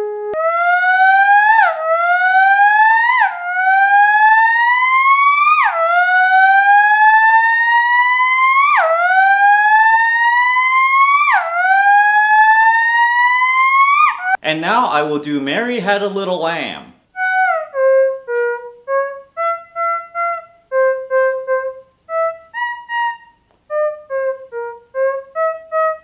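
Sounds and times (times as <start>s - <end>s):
theremin imitating car engine: 0.4s - 14.4s.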